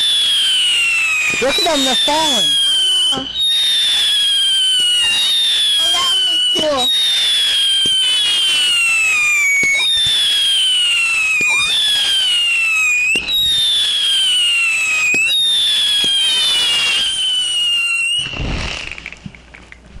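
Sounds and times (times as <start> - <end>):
whistling fireworks: 0.0 - 19.8
short noisy rush: 18.2 - 19.2.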